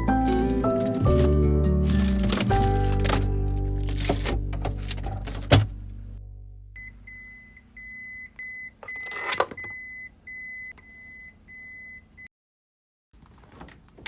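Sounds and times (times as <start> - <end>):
low steady hum: 0.0 - 8.7.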